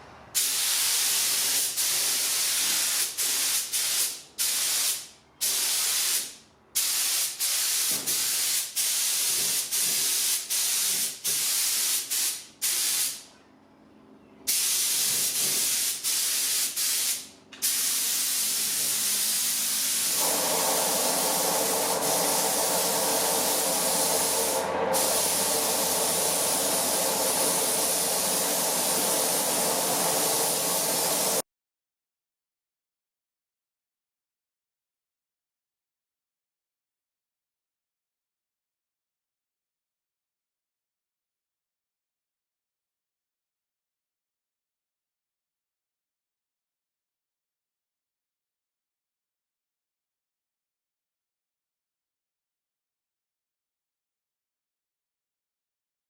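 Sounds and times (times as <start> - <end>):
air spray gun hissing: 0.4 - 13.2, 14.5 - 31.4
steady low hum: 20.2 - 31.2.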